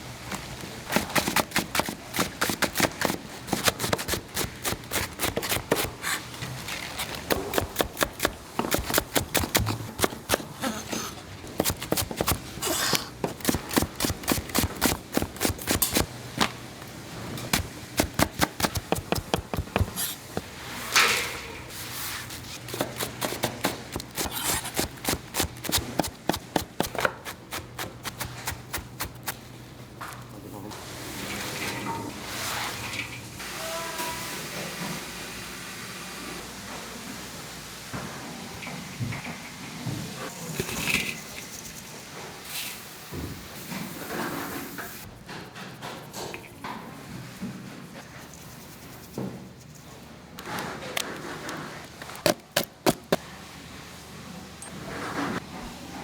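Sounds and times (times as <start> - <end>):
utensils and containers clicking: 0.3 - 21.4, 22.2 - 29.4.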